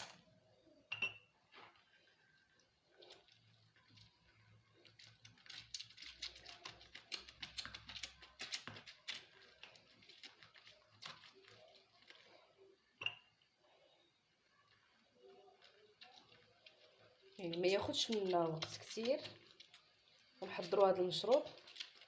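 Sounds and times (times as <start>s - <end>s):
glass clink: 0.9s - 1.3s
lemon squishing and crackling: 2.8s - 12.6s, 15.5s - 22.0s.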